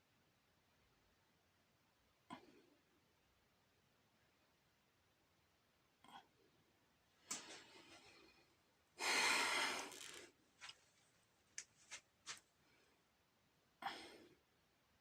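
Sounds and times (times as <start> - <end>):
person gasping for air: 9.0 - 10.2.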